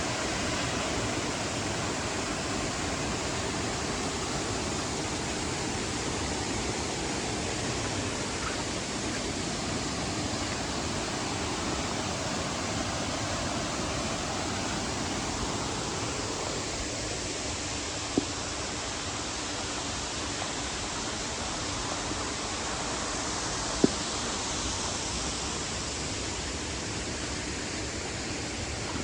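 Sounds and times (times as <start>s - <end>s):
waterfall rushing: 0.0s - 18.2s.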